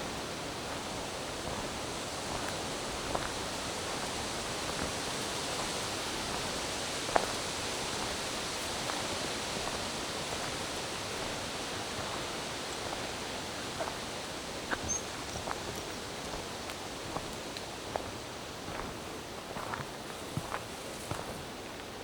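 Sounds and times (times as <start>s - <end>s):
forest rushing hiss: 0.0s - 21.8s.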